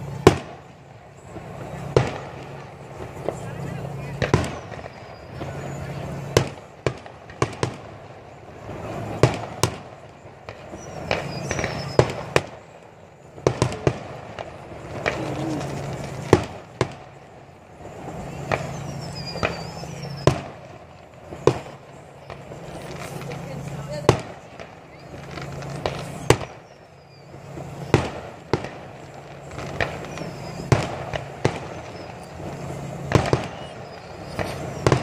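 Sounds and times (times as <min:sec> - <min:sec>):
fireworks bangs: 0:00.0 - 0:35.0
fireworks whistles: 0:00.0 - 0:35.0.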